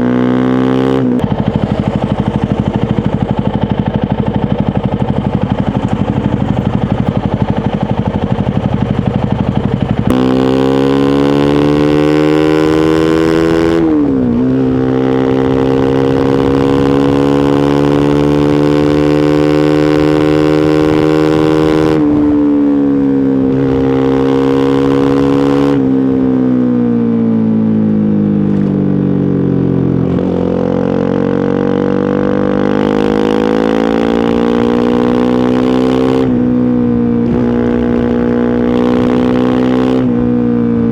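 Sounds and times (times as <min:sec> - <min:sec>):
motorcycle engine riding: 0:00.0 - 0:40.9.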